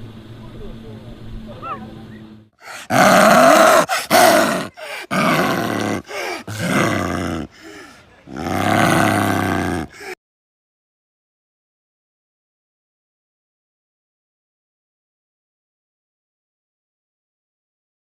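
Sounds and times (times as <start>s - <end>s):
leopard roaring: 2.6s - 10.2s.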